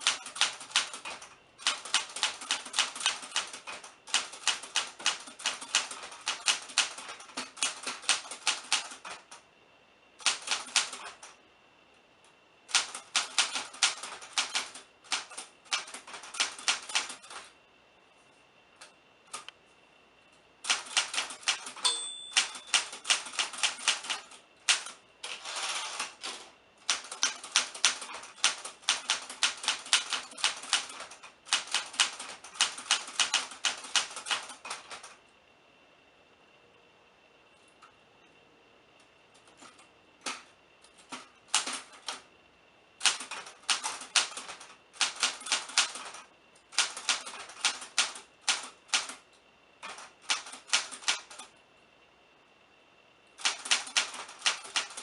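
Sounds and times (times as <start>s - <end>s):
typewriter keys clacking: 20.7s - 35.1s, 46.8s - 49.2s, 53.4s - 55.0s.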